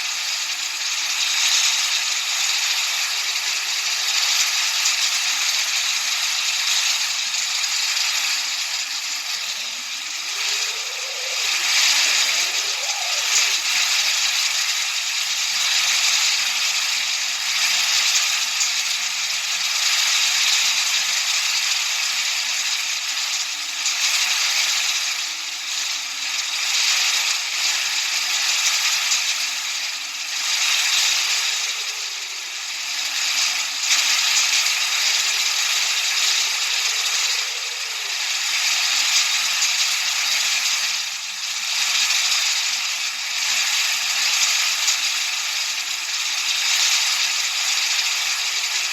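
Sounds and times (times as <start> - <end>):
white noise hiss: 0.0 - 48.9
faint sweeping undertone: 8.4 - 14.8.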